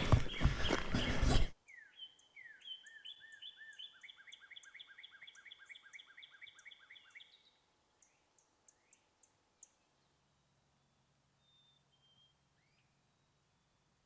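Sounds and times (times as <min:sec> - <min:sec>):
songbird trilling: 0:01.7 - 0:09.0.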